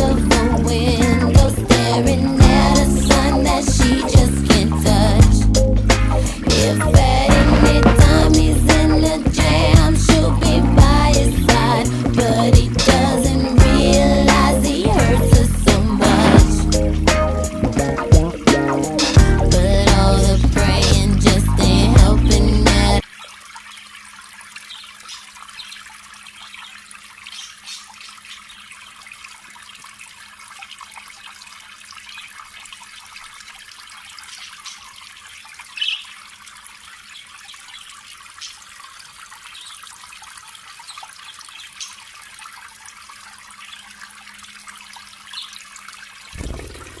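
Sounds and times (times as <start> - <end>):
music: 0.0 - 23.0
trickling water hiss: 0.0 - 47.0.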